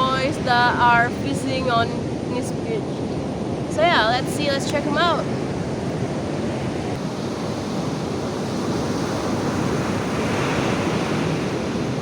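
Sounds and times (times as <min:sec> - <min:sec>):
surf washing onto beach: 0:00.0 - 0:12.0
wind on microphone: 0:00.0 - 0:12.0.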